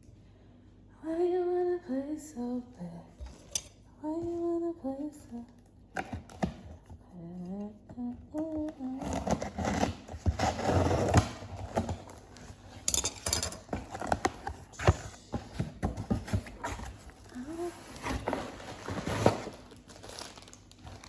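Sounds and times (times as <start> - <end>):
woman humming: 7.0 - 9.3, 17.2 - 18.4
packaging rustling and crinkling: 13.7 - 21.0.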